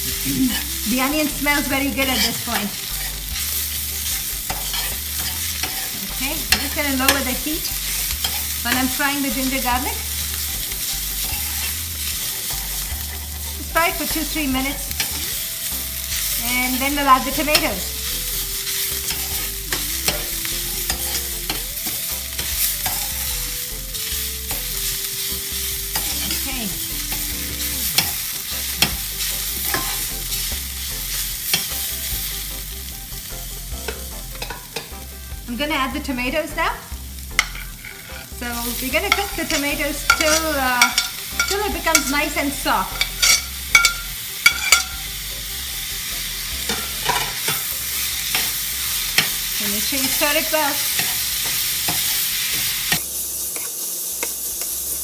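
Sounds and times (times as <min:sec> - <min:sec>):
spoon scraping a pan: 0:00.0 - 0:32.1, 0:33.8 - 0:35.1, 0:37.2 - 0:45.1, 0:46.4 - 0:55.0
onions sizzling in a pan: 0:00.0 - 0:55.0
spoon clicking against pan: 0:39.1 - 0:42.1, 0:43.0 - 0:45.0.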